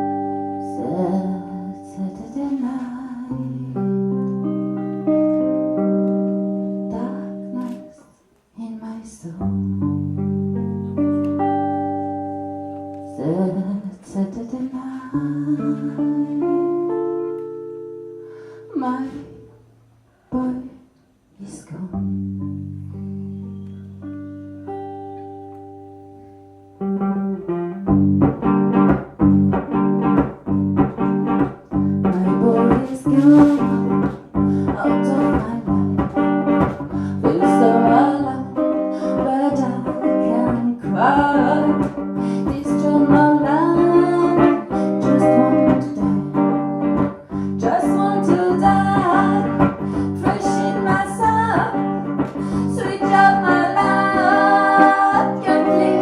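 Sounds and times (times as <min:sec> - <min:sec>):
ringing guitar chords: 0:00.0 - 0:02.4, 0:03.3 - 0:08.1, 0:09.5 - 0:13.7, 0:15.2 - 0:19.6, 0:22.0 - 0:56.0
instrumental rock band music: 0:23.0 - 0:56.0.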